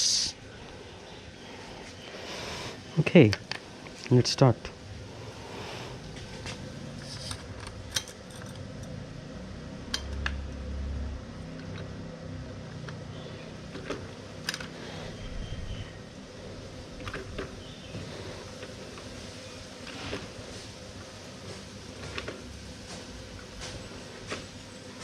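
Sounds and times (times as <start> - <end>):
spanner clinking on metal: 7.2 - 8.9.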